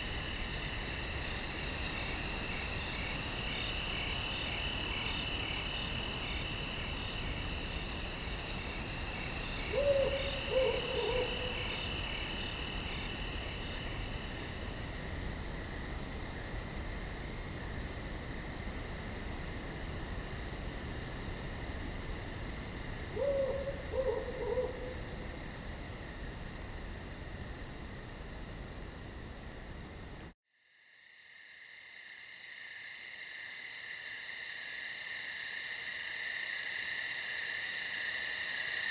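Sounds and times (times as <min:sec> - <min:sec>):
crickets trilling: 0:00.0 - 0:38.9
insect chorus: 0:00.0 - 0:38.9
owl hooting: 0:09.7 - 0:11.8, 0:23.2 - 0:25.1.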